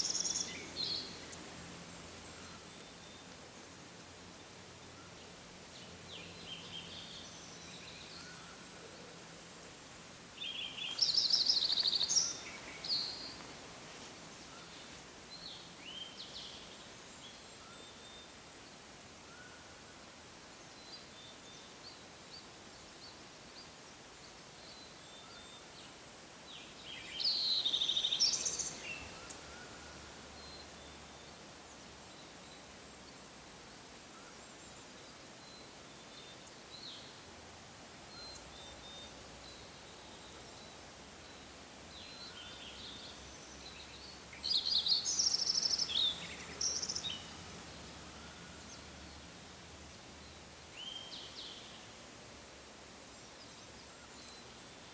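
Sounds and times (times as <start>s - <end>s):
bird song with fast high trill: 0.0s - 1.4s
soft bird chirps and calls: 0.0s - 3.8s, 4.8s - 13.6s, 14.3s - 33.2s, 38.0s - 49.4s
faint outdoor hiss: 0.0s - 54.9s.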